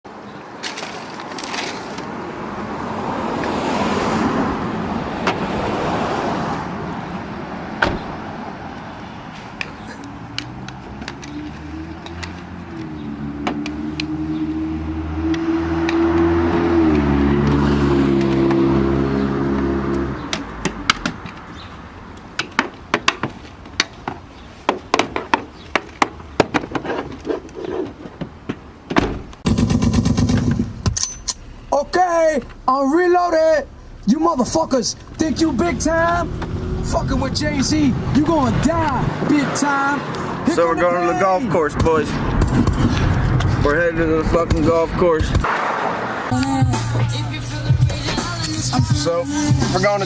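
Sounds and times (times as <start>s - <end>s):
road vehicle rushing: 0.1s - 24.7s, 25.5s - 50.0s
steady pitched tone: 31.3s - 38.0s.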